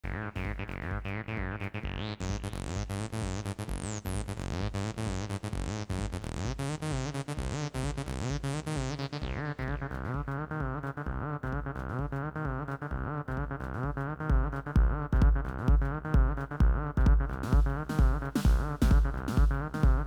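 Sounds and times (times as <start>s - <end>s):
synth bass line: 0.1s - 20.0s
drum machine pattern: 14.2s - 20.0s.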